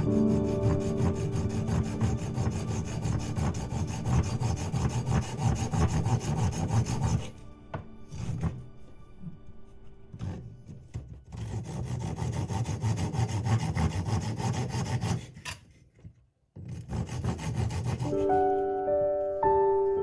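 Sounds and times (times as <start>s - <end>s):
saw cutting wood: 0.0s - 8.8s, 10.1s - 15.6s, 16.7s - 18.4s
held musical notes: 0.0s - 11.0s, 18.1s - 20.0s.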